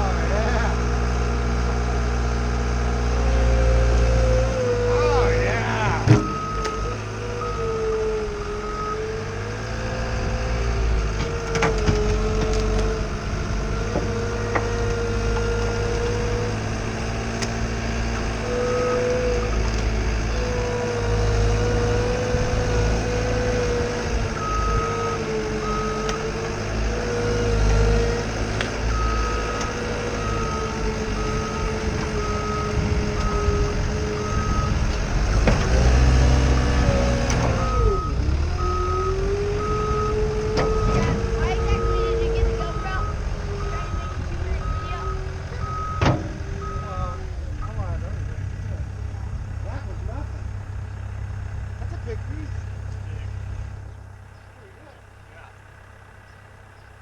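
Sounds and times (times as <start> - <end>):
diesel engine whining under load: 0.0 - 57.0
reversing alarm beeps: 6.0 - 9.1, 28.9 - 33.6, 34.2 - 34.8, 37.5 - 47.8.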